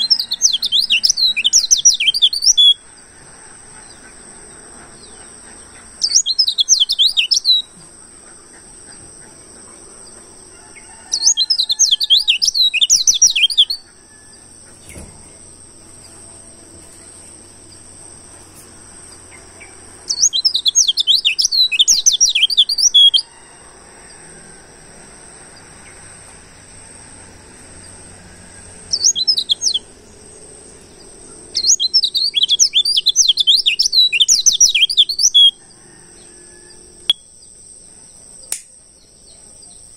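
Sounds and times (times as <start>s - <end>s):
bird twittering warble: 0.0s - 3.1s, 3.7s - 10.4s, 11.0s - 16.2s, 18.4s - 23.2s, 28.9s - 30.2s, 30.8s - 35.6s.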